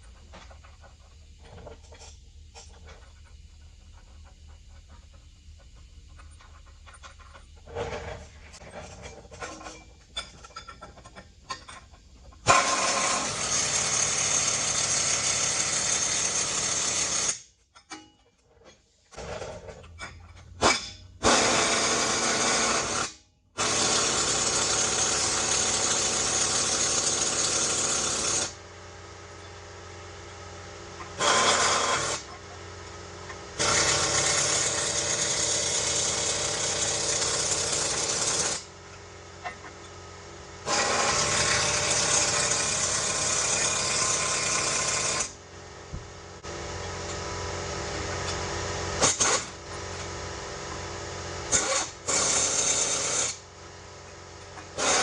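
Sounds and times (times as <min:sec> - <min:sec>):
pneumatic tool bursts: 0:12.5 - 0:17.4, 0:20.6 - 0:28.6, 0:31.2 - 0:32.3, 0:33.6 - 0:38.7, 0:40.6 - 0:45.4, 0:49.0 - 0:49.6, 0:51.5 - 0:53.4, 0:54.7 - 0:55.0.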